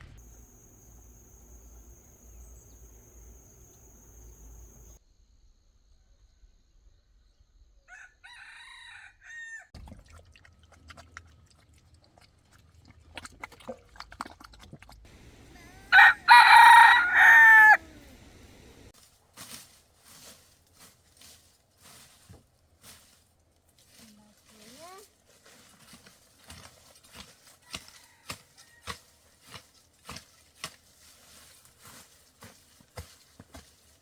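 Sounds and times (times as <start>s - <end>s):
rooster crowing: 7.9s - 9.7s, 15.1s - 18.9s, 27.7s - 28.9s.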